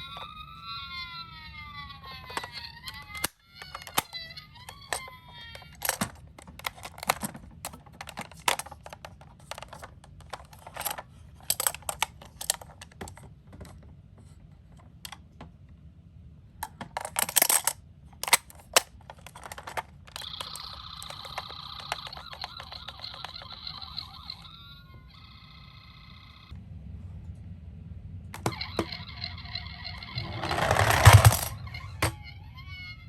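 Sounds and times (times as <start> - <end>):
toy cars clicking and clattering: 1.8 - 13.8, 16.6 - 24.6, 29.8 - 32.3
electronic toy siren: 20.2 - 26.5.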